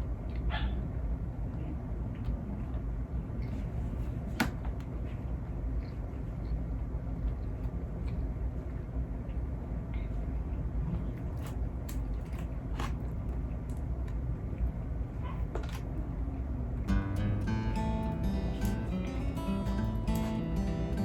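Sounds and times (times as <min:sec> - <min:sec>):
steady low hum: 0:00.0 - 0:21.0
chewing and eating: 0:00.2 - 0:04.2, 0:04.9 - 0:16.6.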